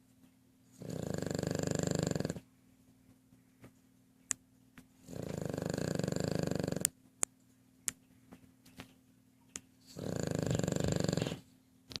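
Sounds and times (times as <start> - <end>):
rattling snoring: 0.8 - 2.4, 5.1 - 6.9, 9.9 - 11.5.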